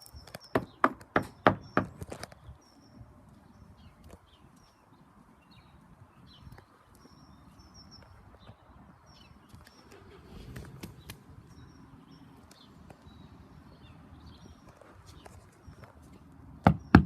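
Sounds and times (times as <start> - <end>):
small birds chirping: 0.0 - 17.0.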